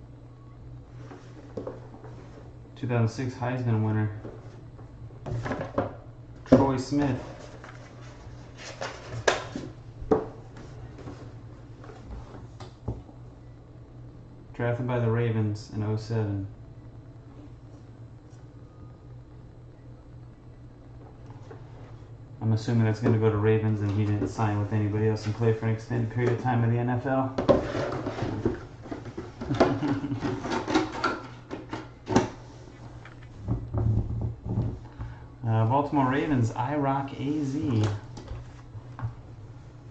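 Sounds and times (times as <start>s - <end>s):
steady low hum: 0.0s - 39.9s.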